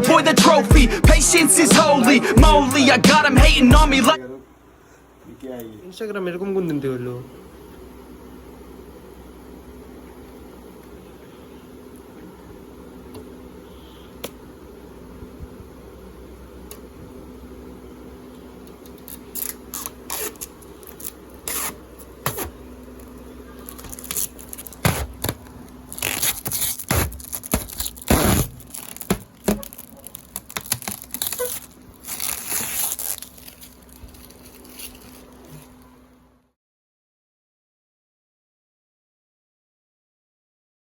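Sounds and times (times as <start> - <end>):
steady low hum: 0.0 - 36.4
packaging tearing and crinkling: 18.8 - 35.8.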